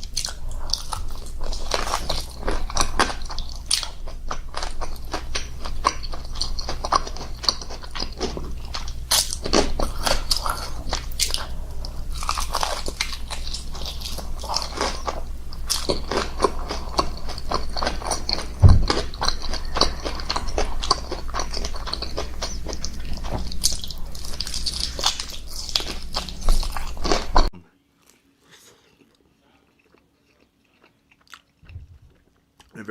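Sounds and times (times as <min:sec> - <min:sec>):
low hum: 0:00.0 - 0:27.7, 0:31.7 - 0:32.2
crunchy biting and chewing: 0:00.0 - 0:32.7
low thump: 0:18.6 - 0:19.1.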